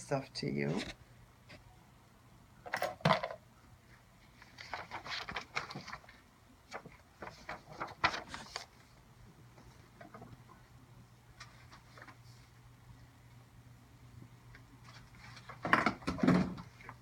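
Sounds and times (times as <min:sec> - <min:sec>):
objects clattering: 0:02.7 - 0:03.4.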